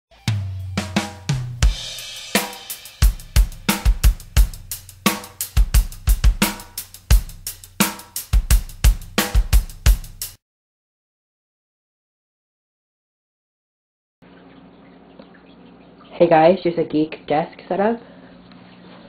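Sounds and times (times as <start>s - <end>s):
drum kit playing a busy beat: 0.2s - 10.4s.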